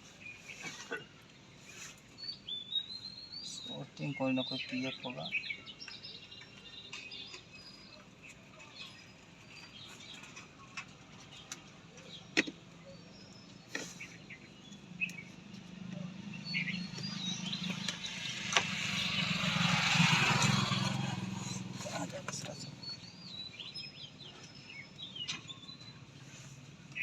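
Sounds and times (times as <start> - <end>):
birds chirping: 0.0 - 27.0
motor vehicle passing by: 13.8 - 24.0.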